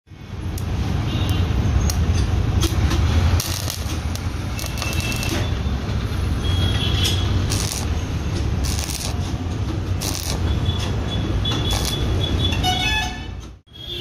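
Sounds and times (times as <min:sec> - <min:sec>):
metallic scraping and clicking: 0:01.9 - 0:05.6, 0:07.0 - 0:12.6
workshop machinery humming: 0:02.0 - 0:06.4, 0:07.0 - 0:12.6.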